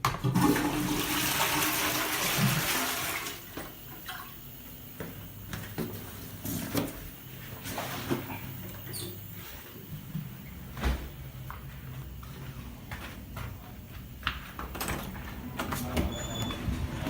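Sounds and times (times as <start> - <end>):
toilet flushing: 0.0 - 9.7
water running: 0.1 - 10.3.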